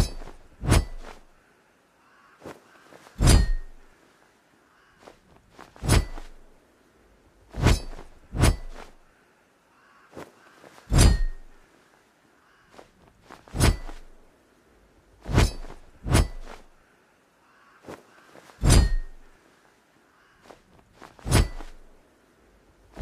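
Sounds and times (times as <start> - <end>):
sword blades clashing: 0.0 - 1.2, 3.2 - 3.8, 5.8 - 6.4, 7.6 - 9.0, 10.9 - 11.5, 13.6 - 14.1, 15.3 - 16.7, 18.6 - 19.3, 21.2 - 21.8.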